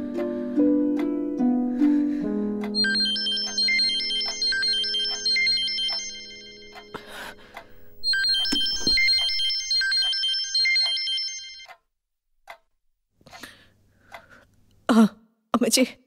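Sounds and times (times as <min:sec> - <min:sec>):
phone ringtone electronic tune: 0:02.8 - 0:11.7.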